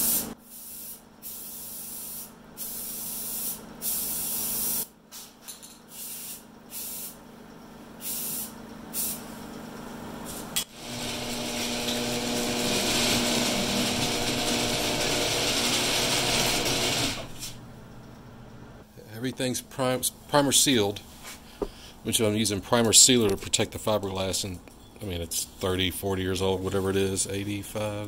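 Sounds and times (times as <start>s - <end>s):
paint spray hissing: 0.0s - 4.9s, 5.9s - 7.2s, 8.0s - 9.3s.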